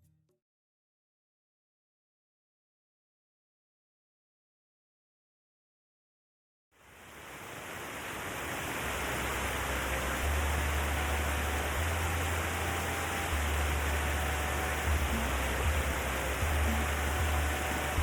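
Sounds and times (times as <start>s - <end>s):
stream water rushing: 6.8s - 18.0s.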